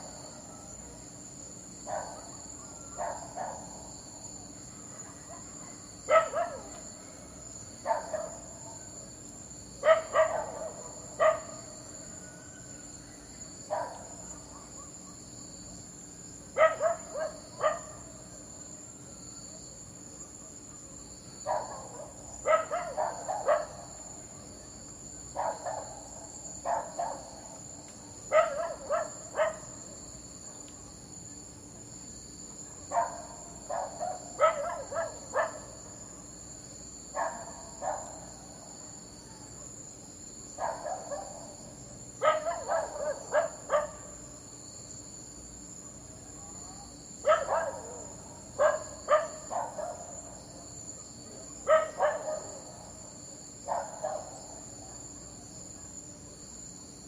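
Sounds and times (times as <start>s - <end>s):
insects chirring: 0.0s - 57.0s
dog barking: 1.8s - 3.9s, 5.0s - 6.8s, 7.8s - 8.8s, 9.8s - 11.6s, 13.7s - 15.0s, 16.6s - 18.1s, 21.4s - 24.0s, 25.3s - 27.5s, 28.3s - 29.8s, 32.7s - 35.8s, 37.1s - 38.4s, 40.6s - 41.6s, 42.2s - 44.2s, 47.2s - 52.9s, 53.6s - 55.2s.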